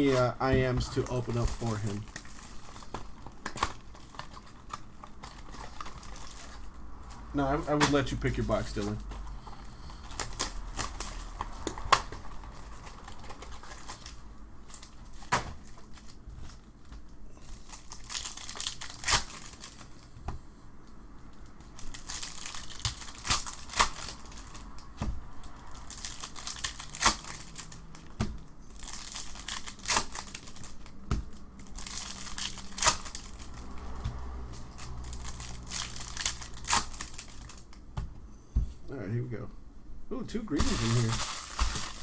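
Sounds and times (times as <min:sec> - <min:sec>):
wrappers torn and crinkled: 0:00.0 - 0:09.3, 0:10.0 - 0:20.1, 0:21.4 - 0:37.8, 0:40.5 - 0:42.0.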